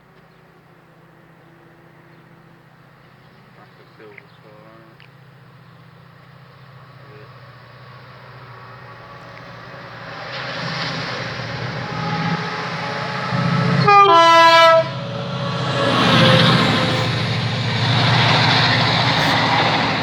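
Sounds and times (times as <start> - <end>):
train running noise: 0.0 - 20.0
two-note train horn: 11.7 - 17.3.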